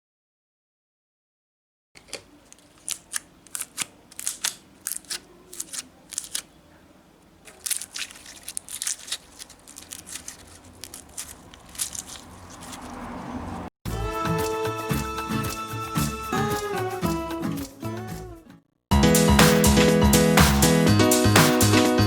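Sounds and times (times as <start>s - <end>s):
crinkly materials crackling: 2.0s - 13.7s.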